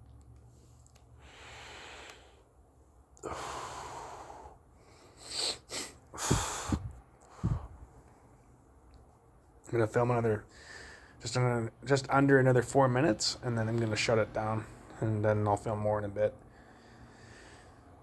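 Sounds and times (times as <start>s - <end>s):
person breathing heavily: 1.2s - 2.6s, 3.2s - 8.1s, 10.5s - 11.2s, 16.5s - 18.0s.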